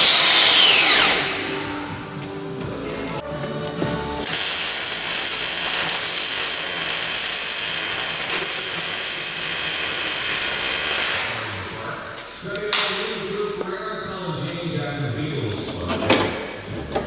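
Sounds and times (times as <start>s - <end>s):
angle grinder on steel: 0.0s - 1.5s, 4.2s - 11.5s.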